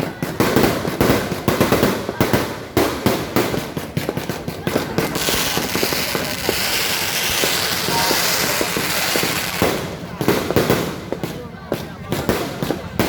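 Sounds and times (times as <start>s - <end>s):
fireworks bangs and pops: 0.0s - 13.0s.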